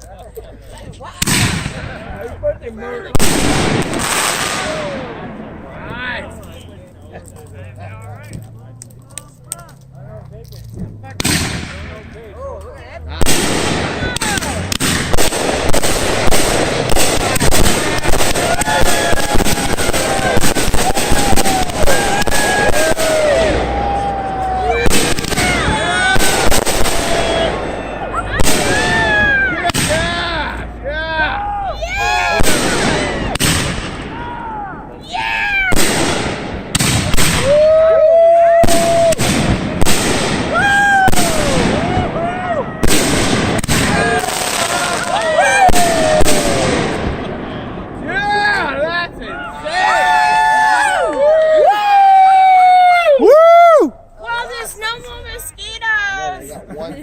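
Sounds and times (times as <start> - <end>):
fireworks bangs and crackling: 0.8 - 12.4, 13.0 - 30.7, 32.0 - 51.4
fireworks whistles gliding down: 15.2 - 23.8, 24.7 - 29.5.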